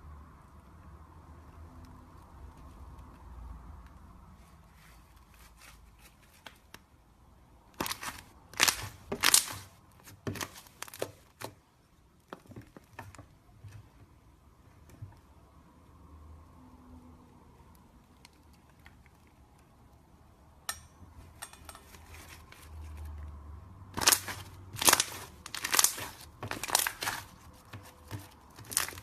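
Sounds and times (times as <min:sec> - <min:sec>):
crackling crinkling noise: 0:07.8 - 0:11.4, 0:23.9 - 0:29.0.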